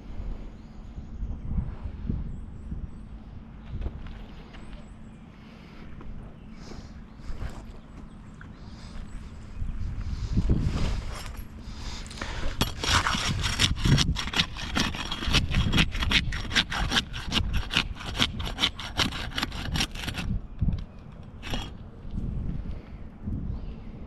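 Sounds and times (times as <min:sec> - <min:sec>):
hand tool rubbing on wood: 0:11.8 - 0:20.3.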